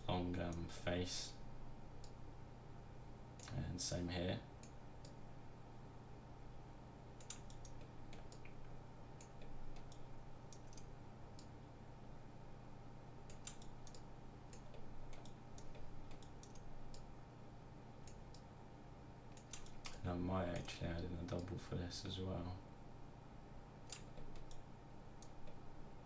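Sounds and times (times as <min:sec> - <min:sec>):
low steady hum: 0:00.0 - 0:26.0.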